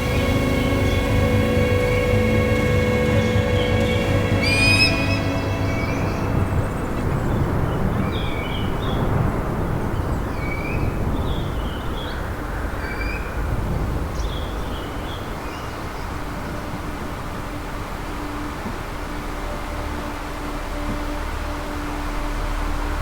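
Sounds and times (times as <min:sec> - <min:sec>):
waterfall rushing: 0:00.0 - 0:09.8.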